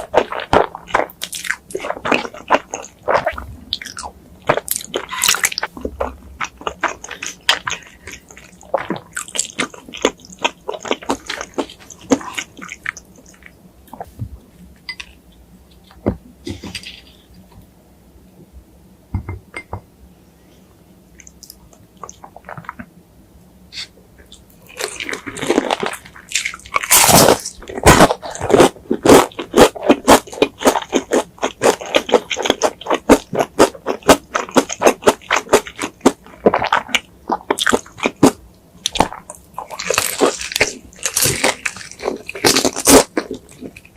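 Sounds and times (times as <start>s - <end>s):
wet chewing and crunching: 0.0s - 14.1s, 21.2s - 22.9s, 24.2s - 43.9s.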